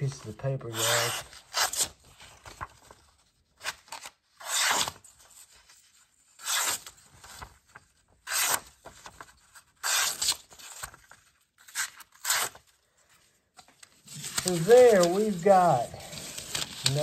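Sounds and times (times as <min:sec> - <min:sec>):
knife slicing through paper: 0:14.1 - 0:17.0.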